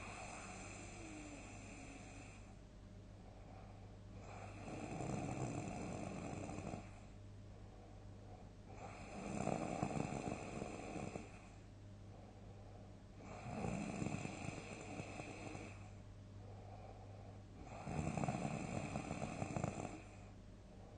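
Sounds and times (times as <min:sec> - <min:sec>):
person snoring loudly: 0:04.3 - 0:06.9, 0:08.8 - 0:11.3, 0:13.2 - 0:15.8, 0:17.6 - 0:20.1.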